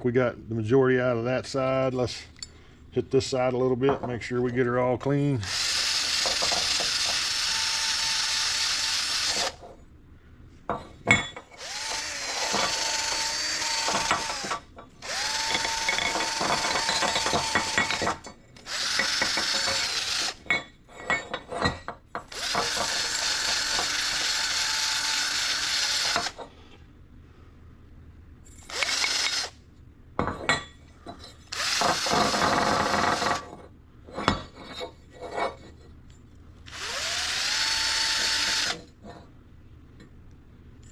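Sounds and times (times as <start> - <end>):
power drill whining: 5.4 - 9.6, 11.6 - 20.4, 22.3 - 26.4, 28.7 - 29.5, 31.5 - 33.4, 36.7 - 38.8.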